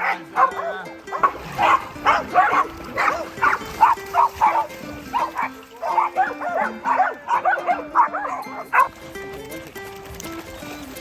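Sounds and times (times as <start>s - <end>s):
dog barking: 0.0s - 9.0s
background music: 0.0s - 11.0s.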